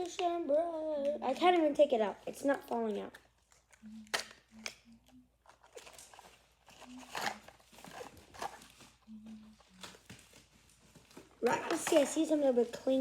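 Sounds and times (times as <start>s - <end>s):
cards and packaging crinkling: 0.0s - 13.0s
faint hums: 8.8s - 10.1s.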